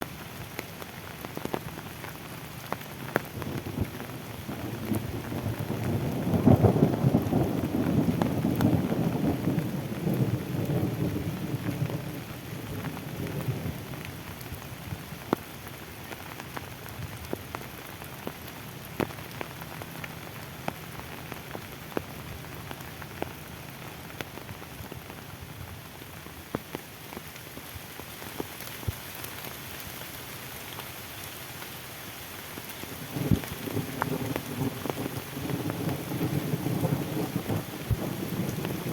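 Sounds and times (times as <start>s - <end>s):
rain on foliage: 0.0s - 38.9s
thunder rumble: 3.2s - 15.3s, 32.9s - 38.9s.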